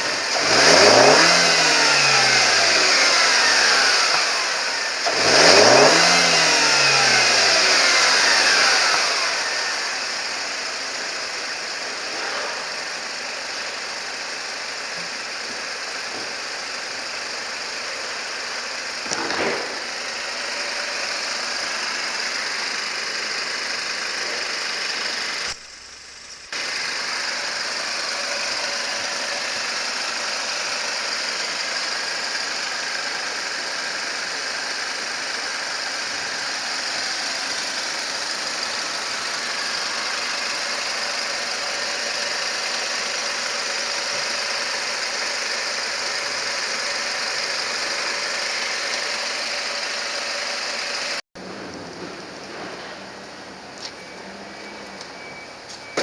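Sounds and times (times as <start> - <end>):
car engine running: 0.0 - 56.0.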